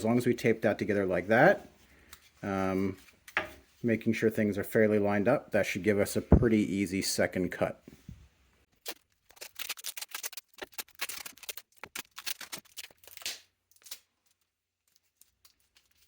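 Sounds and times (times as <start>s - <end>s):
tape pulled off roll crackling: 8.8s - 14.1s.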